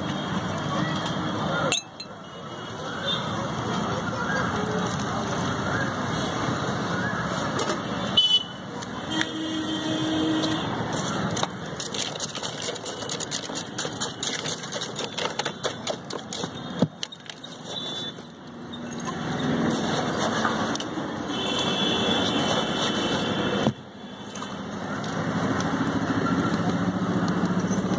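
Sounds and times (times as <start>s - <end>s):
street traffic: 0.0s - 27.9s
rapid clicking and clattering: 11.3s - 17.4s.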